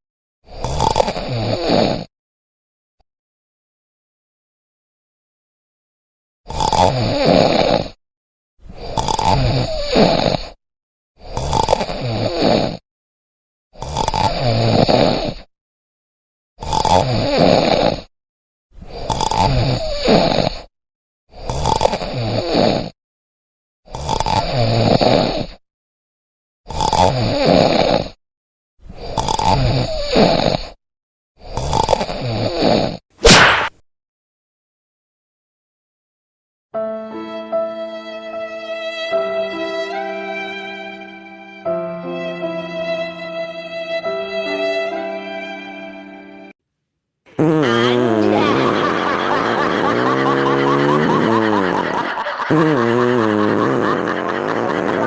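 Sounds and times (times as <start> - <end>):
loud snoring: 0.5 - 2.1, 6.5 - 8.0, 8.8 - 10.6, 11.2 - 12.8, 13.8 - 15.5, 16.6 - 18.1, 18.8 - 20.7, 21.3 - 23.0, 23.9 - 25.6, 26.7 - 28.2, 28.9 - 30.8, 31.4 - 33.0, 47.3 - 55.0.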